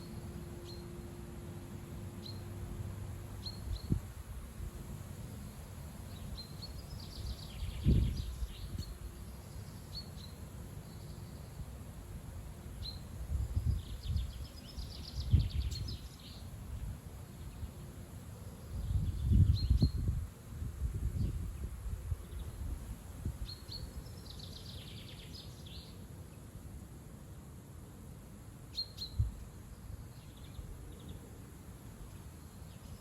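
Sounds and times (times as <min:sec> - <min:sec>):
small birds chirping: 0:06.0 - 0:11.7, 0:12.8 - 0:20.1, 0:23.4 - 0:26.4, 0:28.6 - 0:33.0
wind buffeting microphone: 0:07.2 - 0:09.0, 0:13.2 - 0:16.1, 0:18.8 - 0:23.6.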